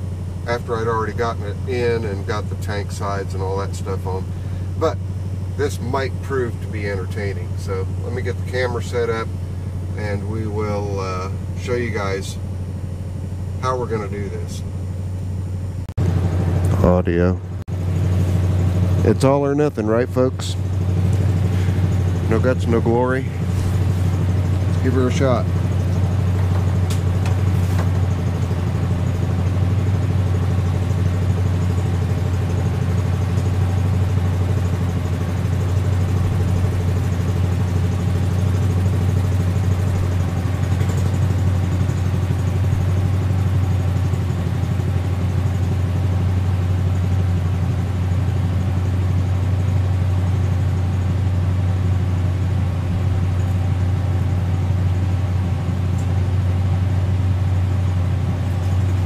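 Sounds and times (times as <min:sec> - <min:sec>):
tractor engine droning: 0:00.0 - 0:59.0.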